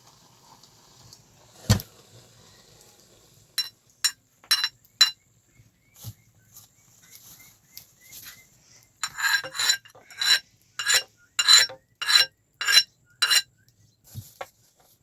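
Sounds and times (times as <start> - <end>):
metallic clinks of kitchen utensils: 3.6 - 5.2.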